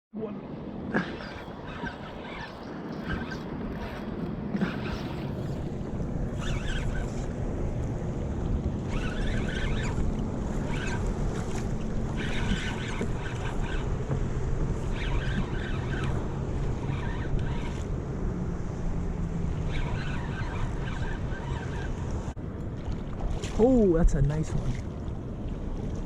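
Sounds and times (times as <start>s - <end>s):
water sloshing against hull: 0.4s - 26.0s
wind on microphone: 0.6s - 26.0s
brief splashes: 22.8s - 25.0s.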